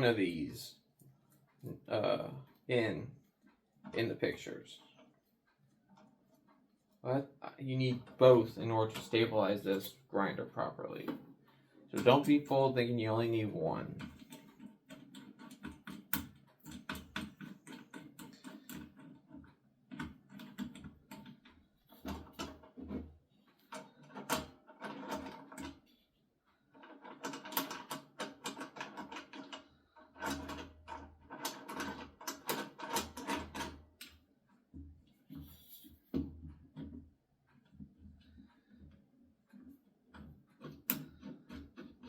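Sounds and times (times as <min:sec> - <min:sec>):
metal parts clicking and rattling: 0:26.7 - 0:33.8.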